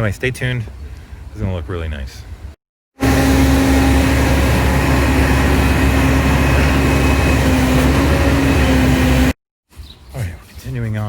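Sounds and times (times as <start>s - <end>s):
engine running loudly: 3.0s - 9.4s.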